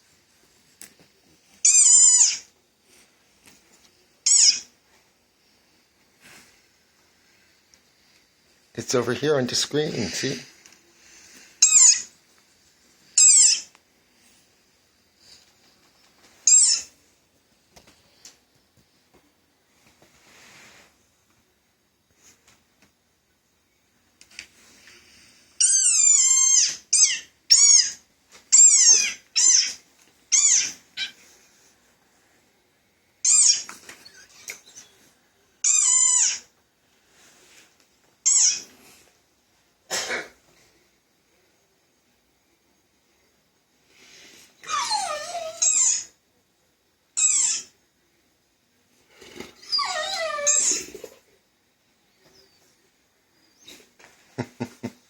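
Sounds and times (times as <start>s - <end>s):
recorded animal cry from speaker: 1.6s - 2.5s, 4.2s - 4.7s, 11.6s - 12.1s, 13.2s - 13.7s, 25.6s - 31.2s, 33.2s - 34.8s, 35.6s - 36.5s, 38.2s - 38.7s, 44.6s - 46.2s, 47.2s - 47.8s, 49.5s - 51.3s.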